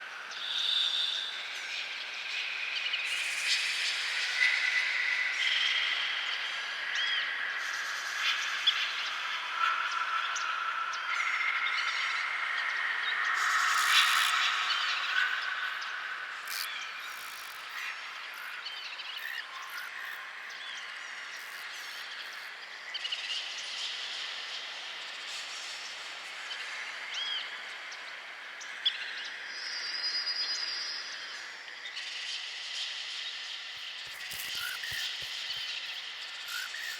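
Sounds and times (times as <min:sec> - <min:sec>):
high-pitched insect drone: 0:16.4 - 0:20.6, 0:21.2 - 0:22.5, 0:33.7 - 0:36.9
bird chirps: 0:33.7 - 0:36.9.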